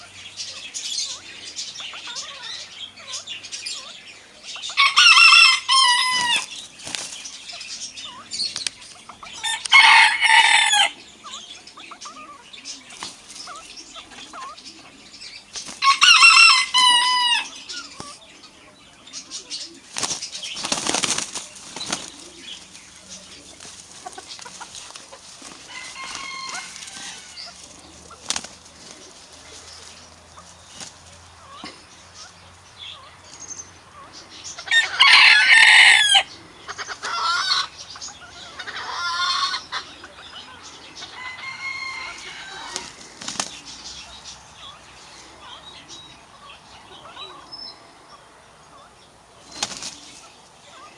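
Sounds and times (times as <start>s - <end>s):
rooster calling: 4.7s - 6.5s, 9.3s - 11.0s, 15.8s - 17.6s, 25.6s - 27.6s, 34.6s - 37.7s, 41.0s - 43.0s
wings flapping: 5.9s - 7.6s, 12.9s - 13.6s, 15.5s - 16.7s, 19.8s - 31.1s, 42.5s - 43.8s, 49.4s - 50.3s.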